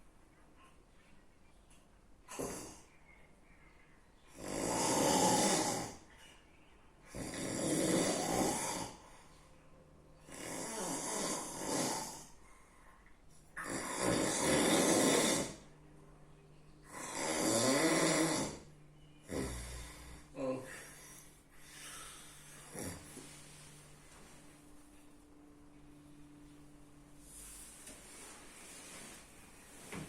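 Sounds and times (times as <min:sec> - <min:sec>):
person snoring loudly: 0:04.3 - 0:06.0, 0:07.1 - 0:09.0, 0:10.3 - 0:12.3, 0:13.6 - 0:15.6, 0:16.9 - 0:20.6, 0:22.6 - 0:23.1.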